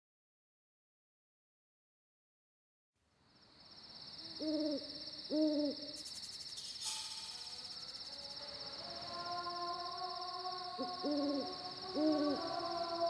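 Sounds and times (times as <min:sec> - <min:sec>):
insects chirping: 0:03.0 - 0:13.0
owl hooting: 0:04.2 - 0:06.0, 0:06.6 - 0:07.6, 0:08.9 - 0:13.0.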